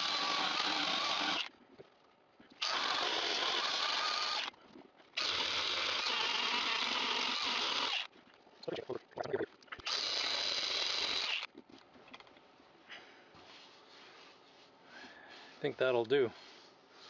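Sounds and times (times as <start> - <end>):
power grinder grinding fiberglass: 0.0 - 1.5.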